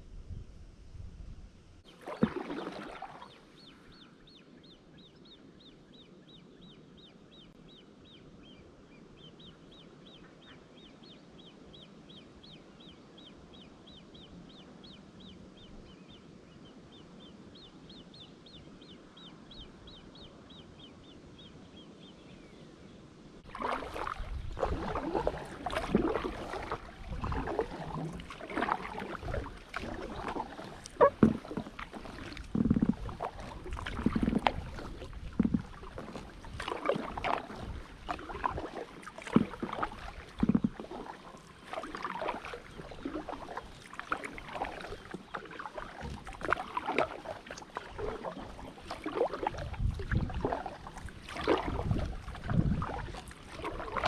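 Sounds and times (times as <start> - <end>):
kayak paddle splashing: 1.8 - 4.1, 23.4 - 54.0.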